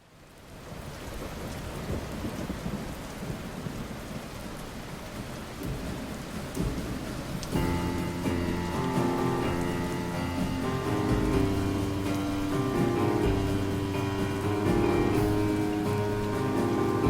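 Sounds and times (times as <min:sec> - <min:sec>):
heavy rain downpour: 0:00.0 - 0:17.0
deep rumbles: 0:05.6 - 0:17.0
music: 0:06.6 - 0:17.0.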